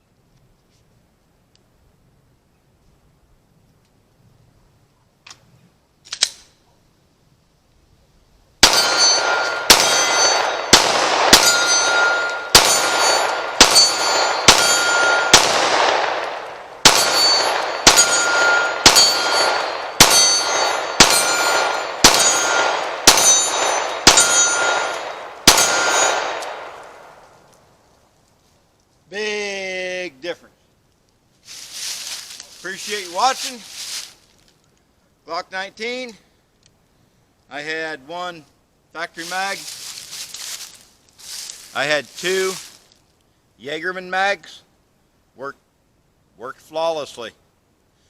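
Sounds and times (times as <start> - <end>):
small gun clicks: 6.0 - 6.6
pistol shots with echo: 8.6 - 27.2.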